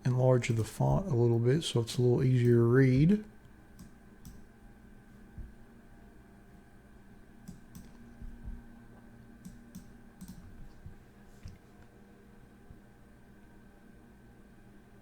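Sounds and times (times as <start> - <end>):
faint room hum: 0.0 - 15.0
mouse and keyboard clicks: 9.4 - 10.8.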